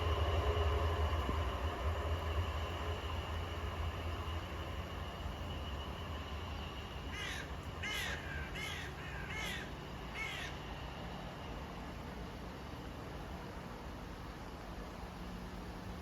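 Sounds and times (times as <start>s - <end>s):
bird harsh calls: 7.2s - 10.6s.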